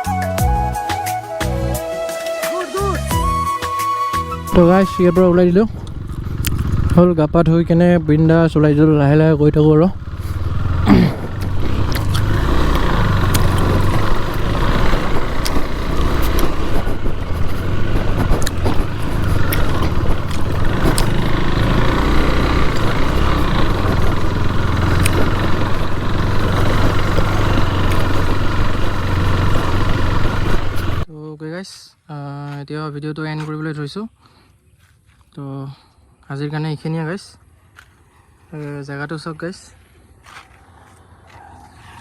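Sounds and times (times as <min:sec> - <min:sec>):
motorcycle engine running: 0:04.5 - 0:31.1
wind on microphone: 0:11.2 - 0:21.3.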